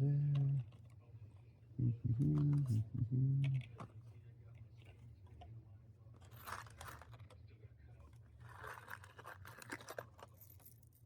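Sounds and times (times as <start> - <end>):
faint scraping and rustling of tools: 3.5 - 11.0.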